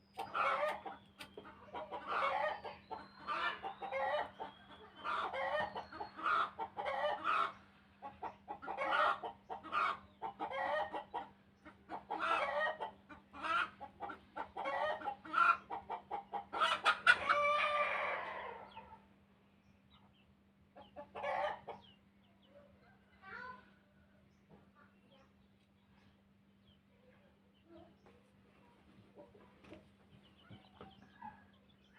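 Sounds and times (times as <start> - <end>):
chickens clucking: 0.0 - 19.2, 19.8 - 23.5, 27.5 - 31.9
rooster crowing: 17.2 - 18.7.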